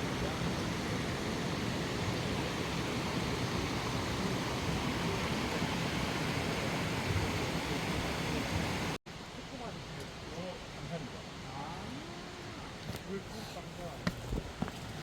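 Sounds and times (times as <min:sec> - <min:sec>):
water rushing over rocks: 0:00.0 - 0:09.0.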